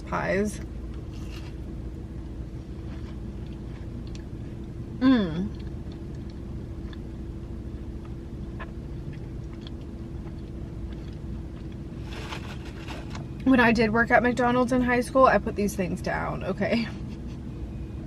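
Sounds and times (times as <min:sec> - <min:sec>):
steady low hum: 0:00.0 - 0:18.0
person chewing: 0:00.9 - 0:04.8, 0:05.4 - 0:13.3
person humming mm: 0:05.0 - 0:05.5.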